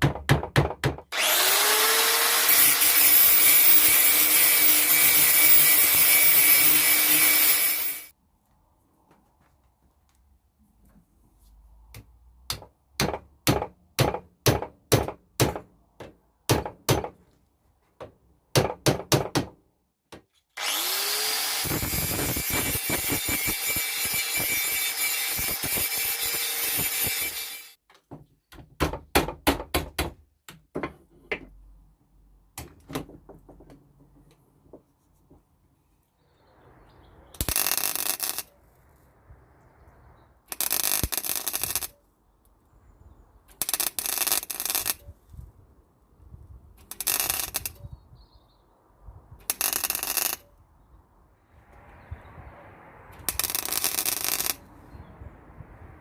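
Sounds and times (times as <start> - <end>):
power tool whining: 1.1 - 8.1, 20.6 - 27.8.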